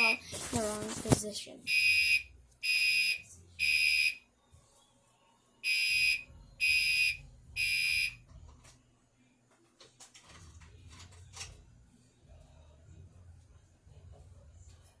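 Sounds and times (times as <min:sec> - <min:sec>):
fire alarm horn blasts: 0:01.7 - 0:04.2, 0:05.6 - 0:08.2.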